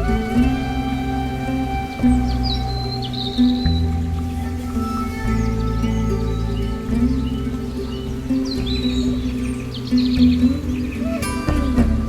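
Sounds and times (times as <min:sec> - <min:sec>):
calm background music: 0:00.0 - 0:12.0.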